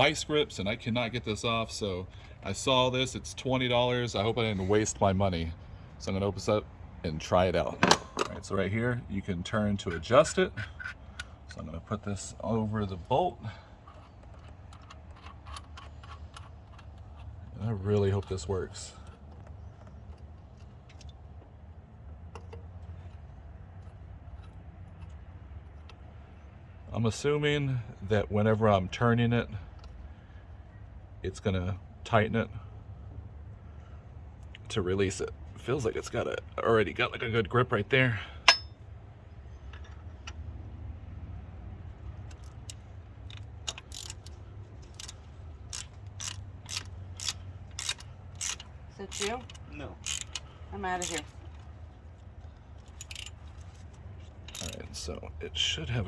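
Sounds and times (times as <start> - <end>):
sharp metallic clicks: 38.5 - 38.8, 42.2 - 51.7.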